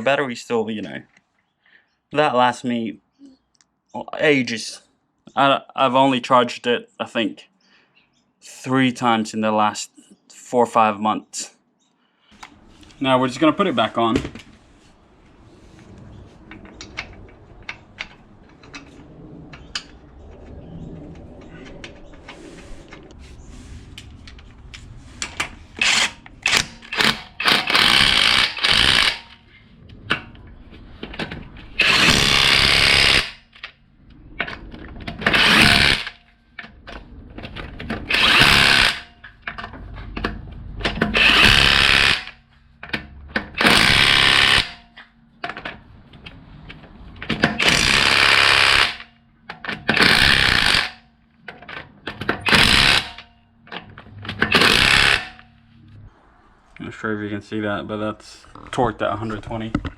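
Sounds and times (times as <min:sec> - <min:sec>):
impact wrench bursts: 0:25.8 - 0:29.4, 0:31.8 - 0:33.4, 0:35.2 - 0:36.2, 0:38.1 - 0:39.1, 0:41.0 - 0:42.4, 0:43.6 - 0:44.8, 0:47.4 - 0:49.1, 0:49.8 - 0:51.0, 0:52.4 - 0:53.3, 0:54.3 - 0:55.5.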